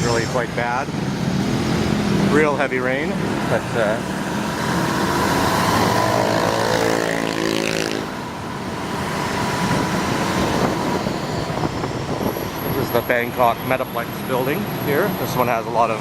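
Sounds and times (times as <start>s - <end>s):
road traffic noise: 0.0s - 16.0s
wind buffeting microphone: 8.2s - 13.8s.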